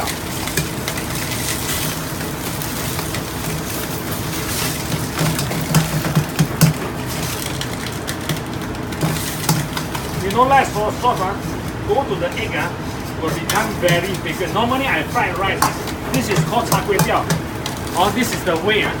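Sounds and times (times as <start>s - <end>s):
food sizzling in a wok: 0.0s - 19.0s
spatula knocking and scraping wok: 0.0s - 19.0s.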